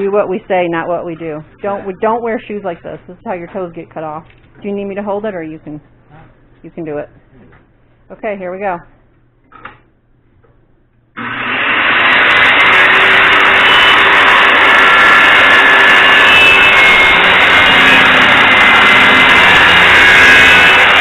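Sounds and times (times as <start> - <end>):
radial arm saw cutting wood: 11.2 - 21.0.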